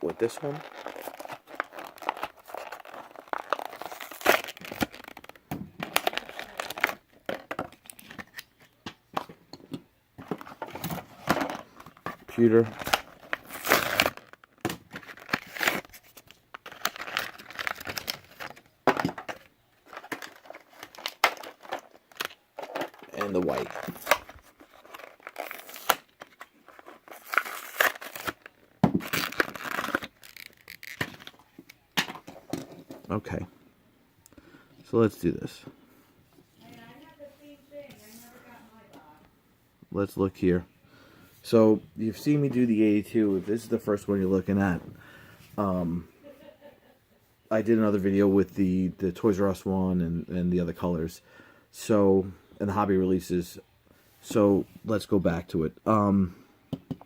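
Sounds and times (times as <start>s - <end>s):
plastic packaging crinkling: 0.0s - 8.6s, 10.2s - 31.9s
card tearing: 0.1s - 7.0s, 10.3s - 31.5s
sharp plastic cracks: 12.8s - 26.5s.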